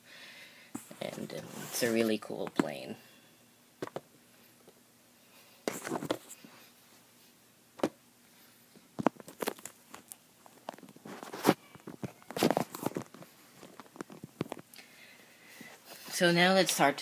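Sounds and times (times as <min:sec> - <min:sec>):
packaging rustling: 0:09.0 - 0:14.7.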